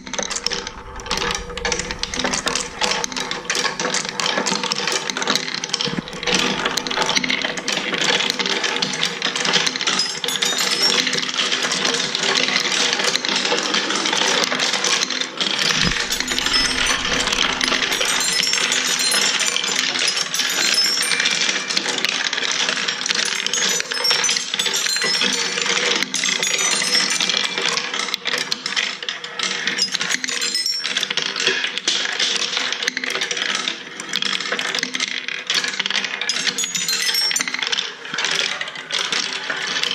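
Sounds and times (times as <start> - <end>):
lift mechanism hum: 0.0 - 4.2
marbles rolling on wooden tracks: 15.7 - 27.8.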